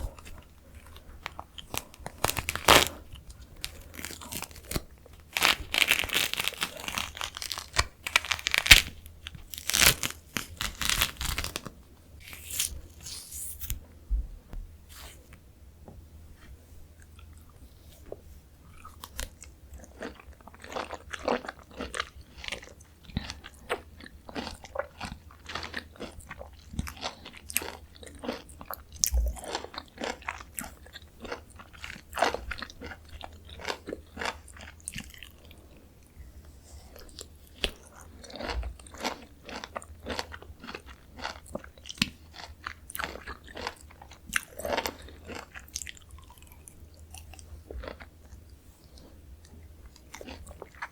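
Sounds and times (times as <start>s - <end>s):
chewing orange segments: 18.6s - 35.8s, 36.9s - 50.9s.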